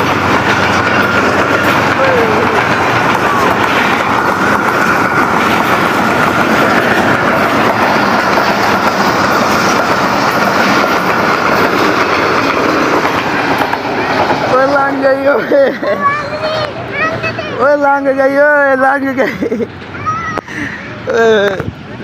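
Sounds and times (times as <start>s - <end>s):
train wheels clattering on rails: 0.0s - 17.6s.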